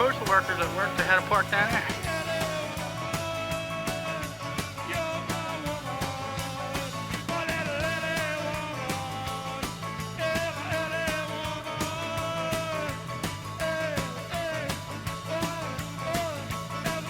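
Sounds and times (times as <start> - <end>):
voice sliding between notes: 0.0 - 2.1
rock music: 0.0 - 17.0
steady drum beat: 0.0 - 17.0.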